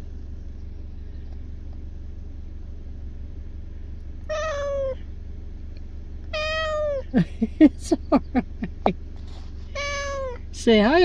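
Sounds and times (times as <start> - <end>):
low rumble inside a car: 0.0 - 11.0
cat meowing: 4.3 - 5.0, 6.3 - 7.1, 9.7 - 10.4.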